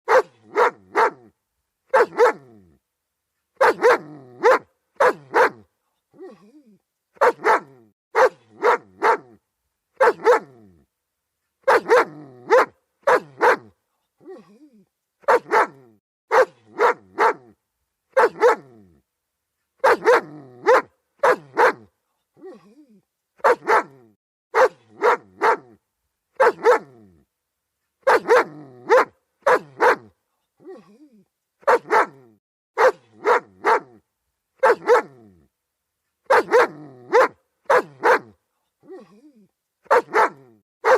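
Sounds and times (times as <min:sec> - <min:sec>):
dog barking: 0:00.1 - 0:01.3, 0:01.9 - 0:02.6, 0:03.6 - 0:05.7, 0:07.2 - 0:09.4, 0:10.0 - 0:10.6, 0:11.6 - 0:14.4, 0:15.2 - 0:18.7, 0:19.8 - 0:21.9, 0:23.4 - 0:25.8, 0:26.4 - 0:27.0, 0:28.0 - 0:30.2, 0:31.6 - 0:34.0, 0:34.6 - 0:35.3, 0:36.3 - 0:39.1, 0:39.8 - 0:40.9.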